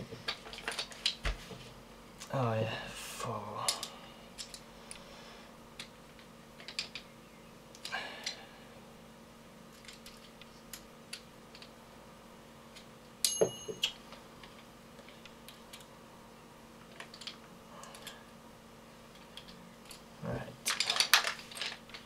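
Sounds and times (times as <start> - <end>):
small metal parts clicking: 6.6 - 7.0, 9.7 - 11.7, 20.6 - 22.0
sharp metallic clink: 13.2 - 14.0.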